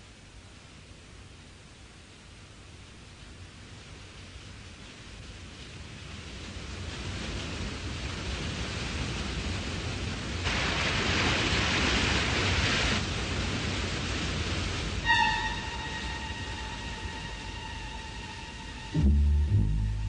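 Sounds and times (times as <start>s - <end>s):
steady rushing noise: 10.1s - 20.0s
bright hiss: 13.7s - 20.0s
sustained pitched tone: 15.0s - 20.0s.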